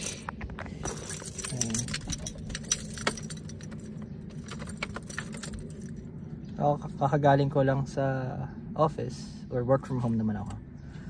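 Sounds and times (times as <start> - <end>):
keys jangling: 0.0 - 6.1.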